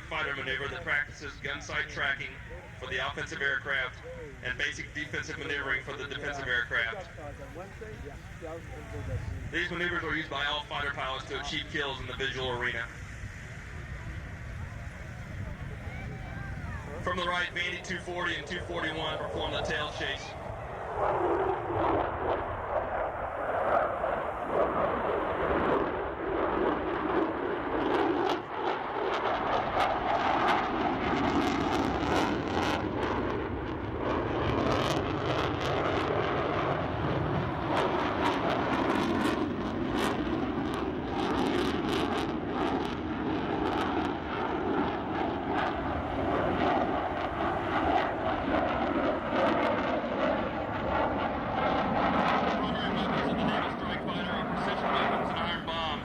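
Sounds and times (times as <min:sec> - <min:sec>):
jet engine rush: 0:00.0 - 0:56.0.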